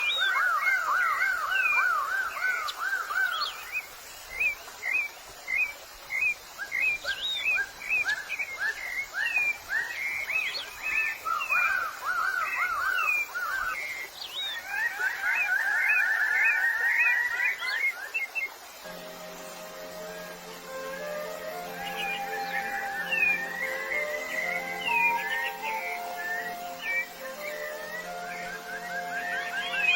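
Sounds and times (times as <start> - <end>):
birds calling with whistled notes: 0.0 - 29.9.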